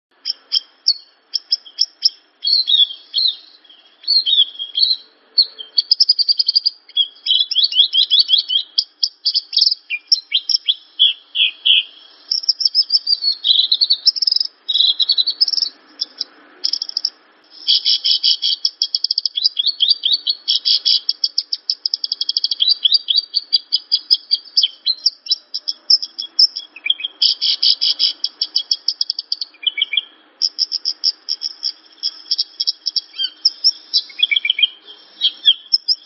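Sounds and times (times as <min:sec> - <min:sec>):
lark singing trills: 0:00.2 - 0:36.0.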